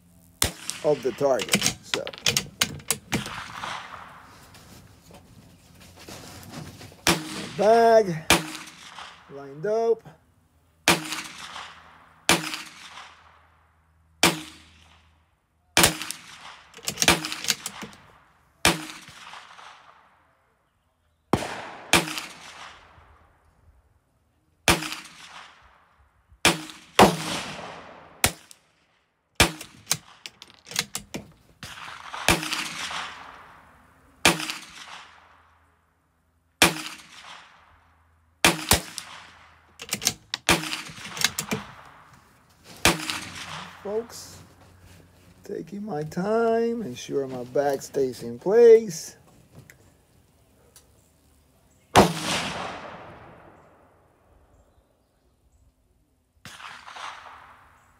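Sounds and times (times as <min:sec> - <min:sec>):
gunshots with echoes: 0:03.1 - 0:04.3, 0:07.1 - 0:09.3, 0:10.9 - 0:13.4, 0:14.2 - 0:15.0, 0:15.8 - 0:18.0, 0:18.6 - 0:20.1, 0:21.4 - 0:23.0, 0:24.7 - 0:25.8, 0:26.4 - 0:28.5, 0:31.6 - 0:35.5, 0:36.6 - 0:37.7, 0:38.4 - 0:39.6, 0:40.4 - 0:42.1, 0:42.8 - 0:44.4, 0:52.0 - 0:53.7, 0:56.4 - 0:57.9.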